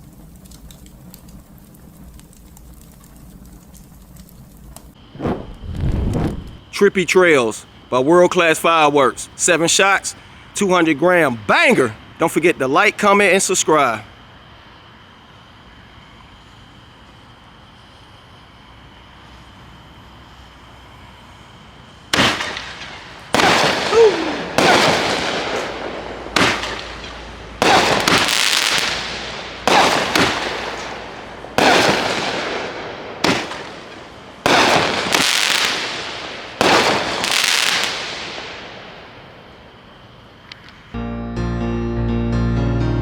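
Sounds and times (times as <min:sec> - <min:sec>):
firework hiss: 0:05.0 - 0:06.9, 0:22.1 - 0:39.7
firework bangs: 0:05.1 - 0:06.8, 0:22.1 - 0:39.6.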